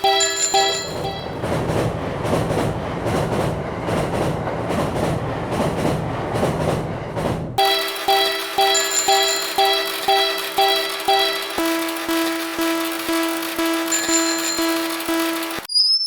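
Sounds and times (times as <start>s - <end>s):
repeating pulsed tone: 0.0s - 1.3s, 7.6s - 15.7s
train rumble: 0.0s - 11.3s
train wheels clattering over rails: 0.0s - 11.6s.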